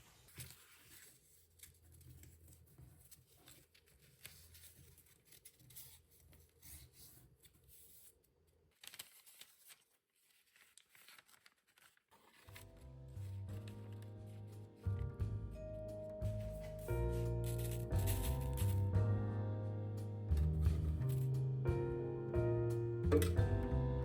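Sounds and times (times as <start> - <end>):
music: 12.4 - 24.0.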